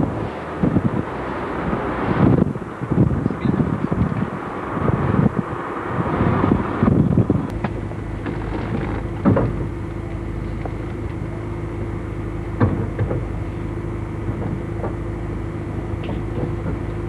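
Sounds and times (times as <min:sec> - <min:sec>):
vehicle engine droning: 0:00.0 - 0:17.0
knocks and rattles: 0:07.6 - 0:09.8, 0:12.6 - 0:13.3.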